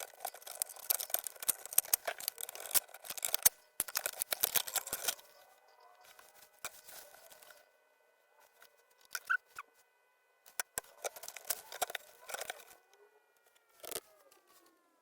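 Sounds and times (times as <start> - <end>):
small objects clicking and rustling: 0.0 - 7.6, 10.5 - 12.9, 13.5 - 14.7.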